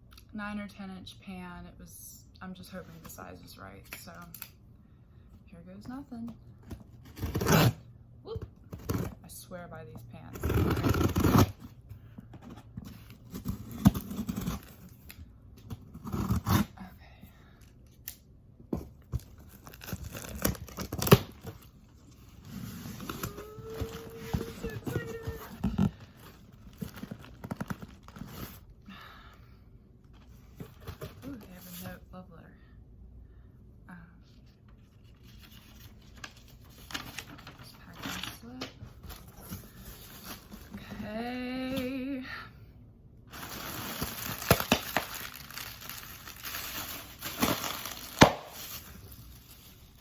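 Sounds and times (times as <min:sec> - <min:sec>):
packing material crinkling: 0:43.3 - 0:50.0.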